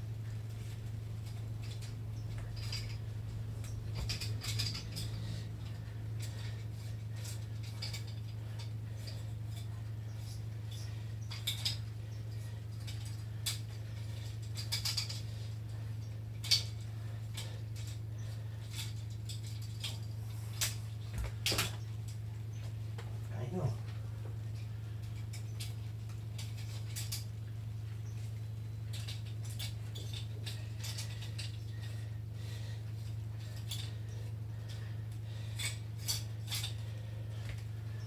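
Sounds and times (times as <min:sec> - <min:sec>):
low hum: 0:00.0 - 0:38.0.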